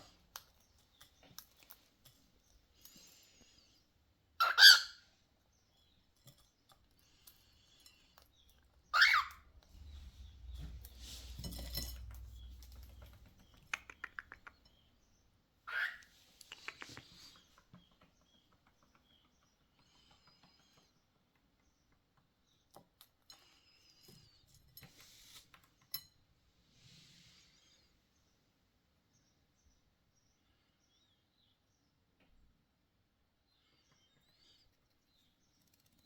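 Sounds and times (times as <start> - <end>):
cockatiel calling loudly: 4.4 - 5.0, 8.9 - 9.4, 15.7 - 16.0
low rumble: 9.6 - 13.4
quick clicks: 13.2 - 14.6.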